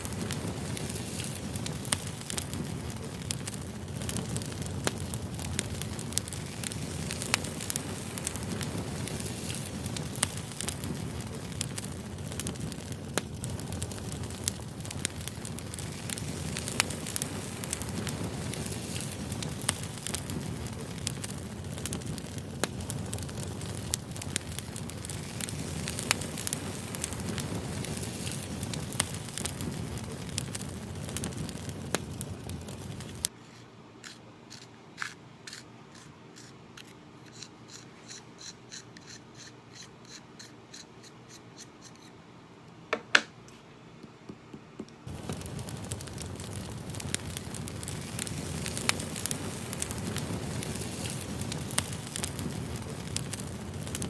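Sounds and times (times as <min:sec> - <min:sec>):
fire crackling and hissing: 0:00.0 - 0:42.2, 0:45.0 - 0:54.0
pencil scratching on paper: 0:33.4 - 0:42.1.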